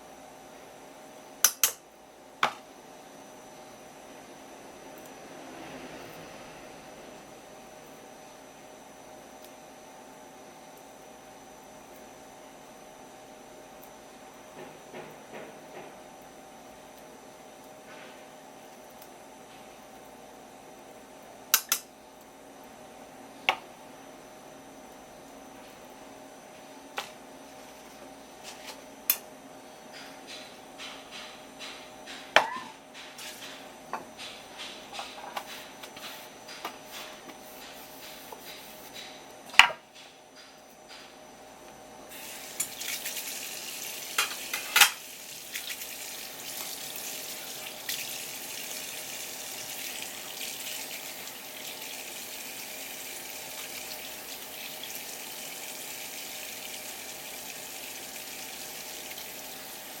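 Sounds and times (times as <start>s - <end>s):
utensils clicking and knocking: 30.0s - 41.2s.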